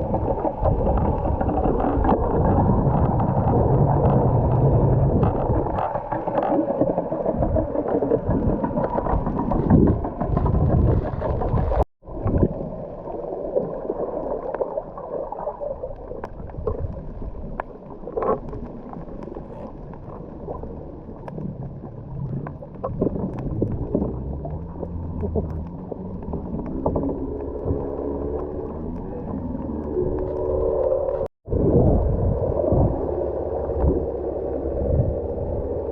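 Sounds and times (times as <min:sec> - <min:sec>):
underwater water gurgling: 0:00.0 - 0:35.9.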